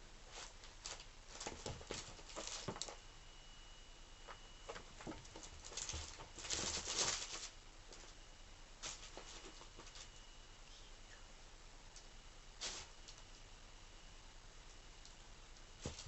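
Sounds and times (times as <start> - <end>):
cat scratching carpet: 0.2 - 3.0, 4.3 - 8.1.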